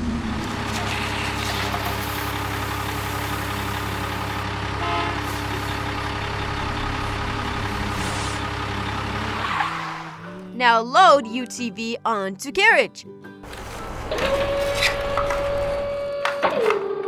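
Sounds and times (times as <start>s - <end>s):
truck engine idling: 0.0s - 10.4s, 13.4s - 16.1s.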